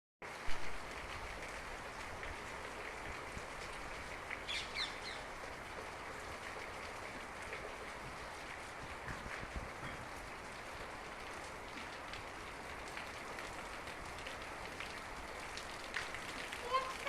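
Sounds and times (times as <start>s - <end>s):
steady rain falling: 0.2s - 17.0s
bird chirping: 4.5s - 5.2s.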